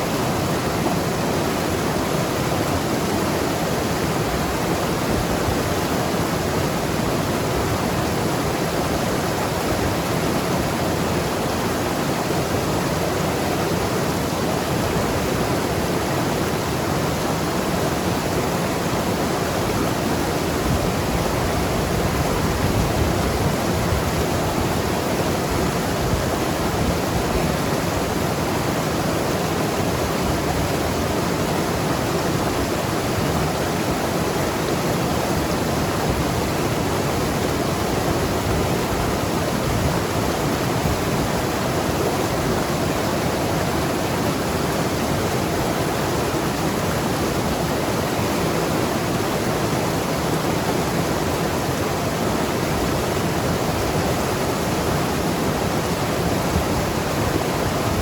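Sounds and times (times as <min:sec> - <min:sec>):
river rushing over rocks: 0:00.0 - 0:58.0.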